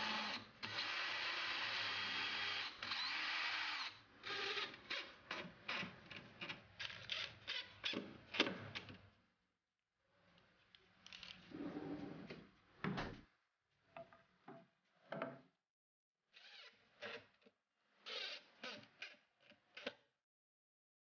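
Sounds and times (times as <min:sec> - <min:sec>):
power drill whirring: 0:00.0 - 0:05.1.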